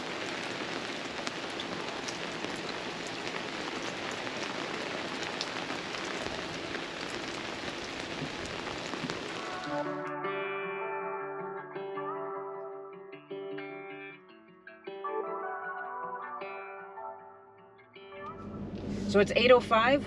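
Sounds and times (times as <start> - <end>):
steady rain: 0.0 - 10.1, 18.4 - 19.4.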